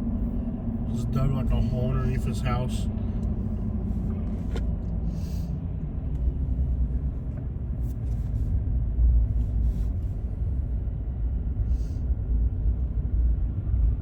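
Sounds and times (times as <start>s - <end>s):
car interior road rumble: 0.0s - 14.0s.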